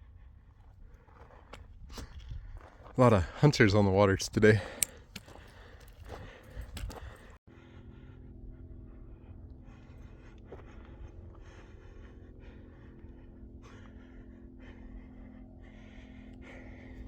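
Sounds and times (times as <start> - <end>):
man breathing hard: 4.5 - 17.0.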